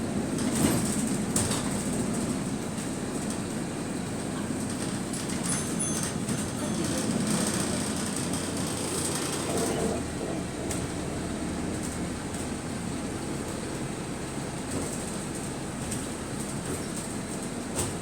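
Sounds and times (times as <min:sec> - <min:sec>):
bus engine and road noise: 0:00.0 - 0:18.0.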